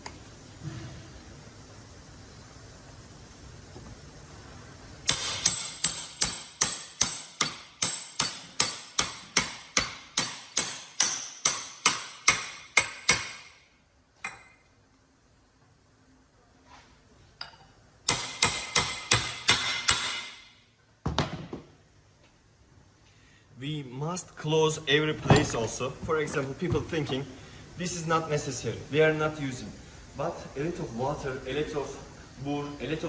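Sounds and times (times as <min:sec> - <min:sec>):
hammer striking metal tool: 0:05.1 - 0:13.6, 0:17.4 - 0:20.5.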